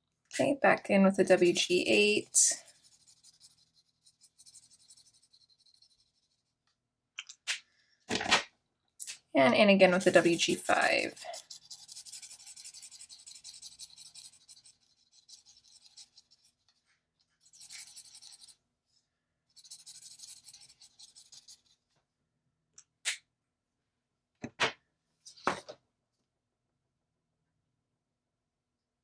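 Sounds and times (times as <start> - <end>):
marker rubbing on paper: 1.2 - 6.6, 9.8 - 16.7, 17.4 - 18.6, 19.5 - 21.8.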